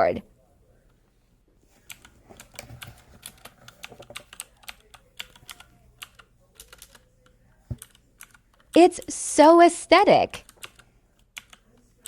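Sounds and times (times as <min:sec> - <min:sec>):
mechanical keyboard typing: 0:01.9 - 0:07.1, 0:07.8 - 0:08.8, 0:10.4 - 0:11.7.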